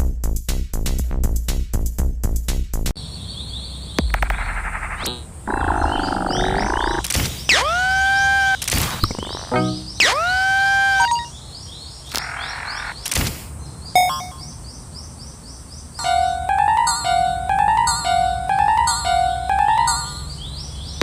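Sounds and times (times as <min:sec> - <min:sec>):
alternating low and high notes: 0:16.0 - 0:20.4.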